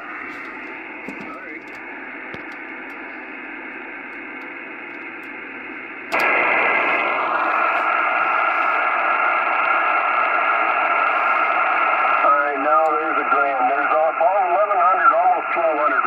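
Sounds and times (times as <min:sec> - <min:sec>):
whistling radio tones: 0:00.0 - 0:02.2, 0:06.2 - 0:16.0
radio static hiss: 0:00.0 - 0:16.0.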